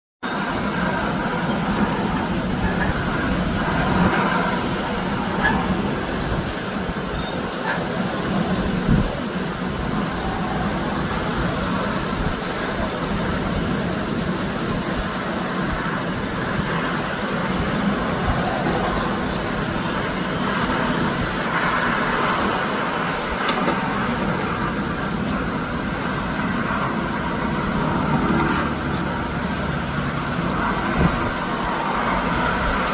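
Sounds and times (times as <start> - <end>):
heavy rain: 0.2 - 32.9.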